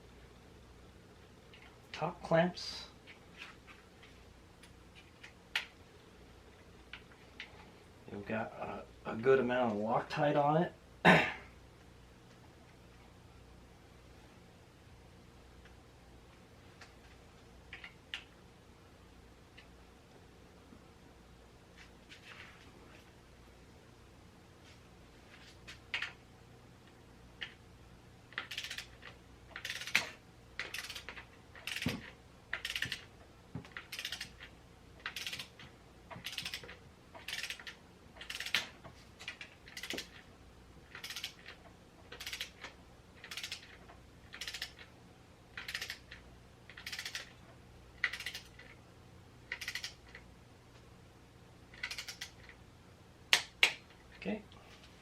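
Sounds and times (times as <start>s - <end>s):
ratchet wrench clicking: 28.4s - 31.9s, 32.5s - 33.1s, 33.8s - 35.6s, 36.2s - 38.6s, 39.3s - 40.2s, 40.9s - 42.6s, 43.2s - 44.8s, 45.6s - 47.3s, 48.0s - 48.7s, 49.5s - 50.0s, 51.7s - 52.4s.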